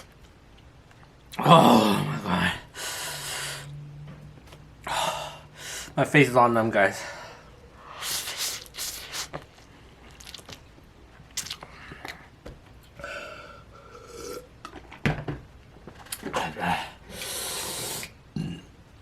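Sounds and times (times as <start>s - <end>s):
heavy breathing: 1.6s - 3.8s, 4.8s - 6.0s, 13.0s - 14.2s
person chewing and slurping: 10.0s - 10.7s.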